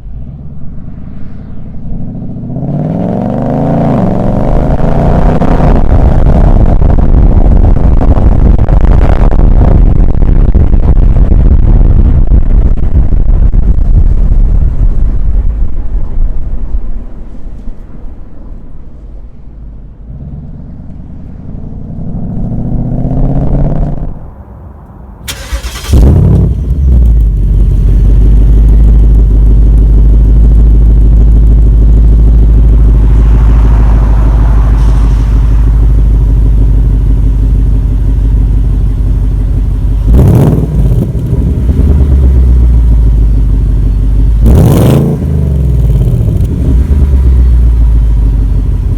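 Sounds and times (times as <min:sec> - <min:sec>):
car engine revving: 0:00.0 - 0:14.8, 0:19.8 - 0:48.9
engine short sharp bursts: 0:25.2 - 0:27.0.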